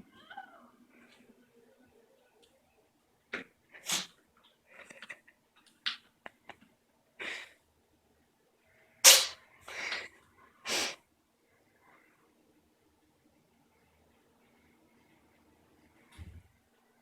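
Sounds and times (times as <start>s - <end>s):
cat sneezing: 3.8s - 4.2s, 9.0s - 9.4s, 10.7s - 11.0s.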